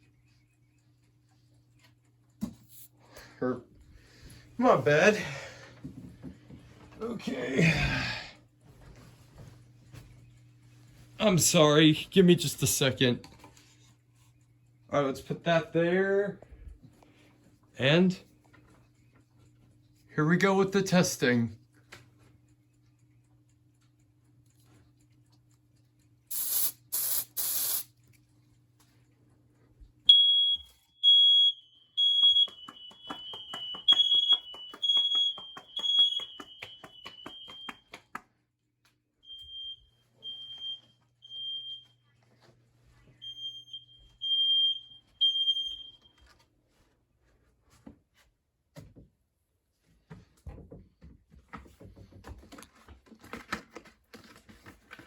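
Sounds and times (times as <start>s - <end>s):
aerosol spray hisses: 26.3s - 27.9s
smoke alarm beeping: 30.1s - 38.1s, 39.2s - 42.1s, 43.2s - 46.2s.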